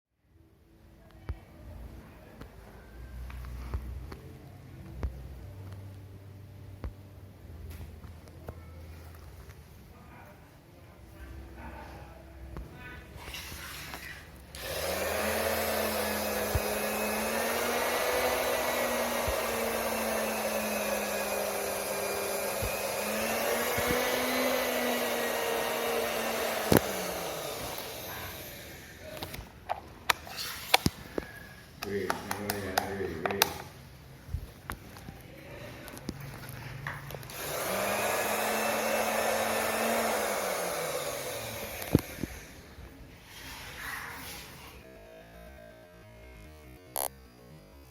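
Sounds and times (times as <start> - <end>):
electric fan whirring: 13.9 - 35.2, 37.0 - 47.1.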